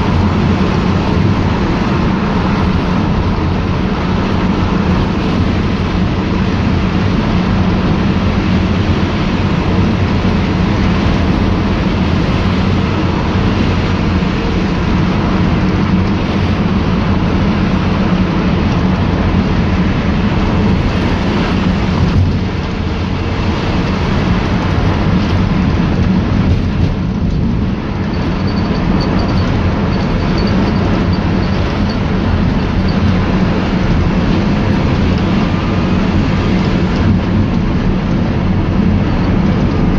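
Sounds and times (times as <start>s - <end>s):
minibus engine and road noise: 0.0s - 39.9s.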